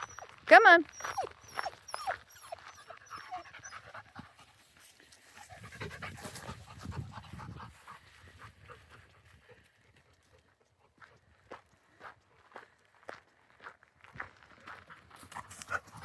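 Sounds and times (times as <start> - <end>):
faint dog whimpers: 0.0 - 4.2
dog panting: 0.0 - 11.2, 15.2 - 16.0.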